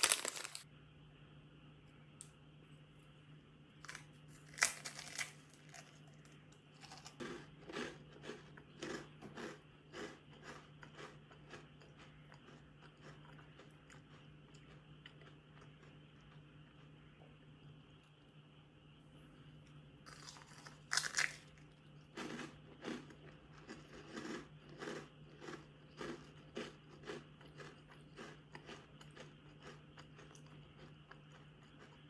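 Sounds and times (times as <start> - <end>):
person chewing crunchy food: 3.9 - 17.0, 20.1 - 32.0.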